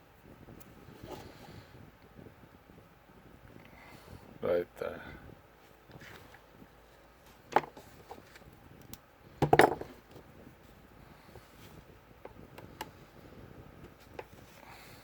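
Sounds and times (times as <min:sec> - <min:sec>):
wire handling knocks and clicks: 0:07.2 - 0:10.2, 0:13.8 - 0:14.4.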